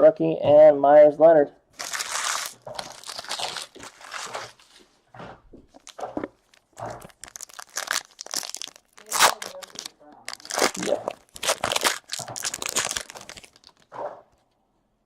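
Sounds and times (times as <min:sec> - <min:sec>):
wrapper crinkling and tearing: 0:01.8 - 0:04.8, 0:05.7 - 0:14.0.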